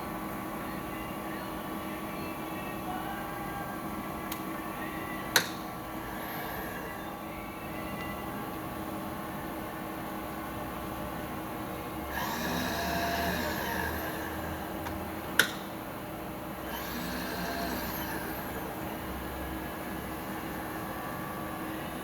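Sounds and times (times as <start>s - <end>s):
milling machine humming: 0.0s - 22.0s
sharp click: 15.4s - 15.6s.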